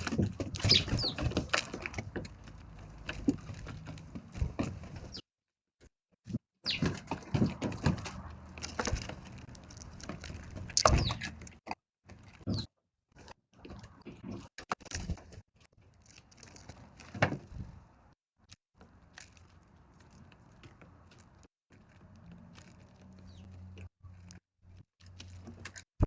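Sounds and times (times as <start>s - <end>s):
birds pecking at food: 0.0s - 5.2s, 6.6s - 17.3s, 18.4s - 25.9s
bird chirps: 0.6s - 1.2s, 6.6s - 7.0s, 10.8s - 11.3s, 12.5s - 12.7s.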